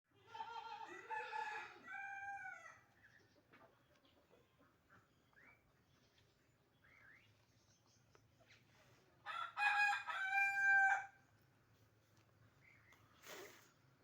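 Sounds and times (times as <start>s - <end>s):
rooster crowing: 0.9s - 2.8s, 9.3s - 11.2s.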